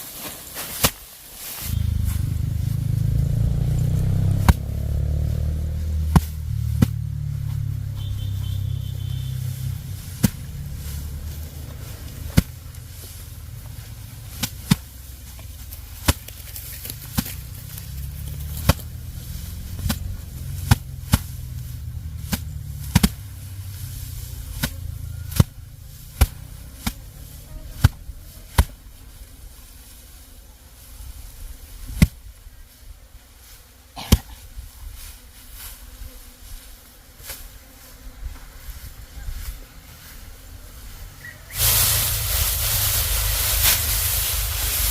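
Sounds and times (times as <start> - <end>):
low rumble: 1.6 - 16.0, 16.6 - 28.3.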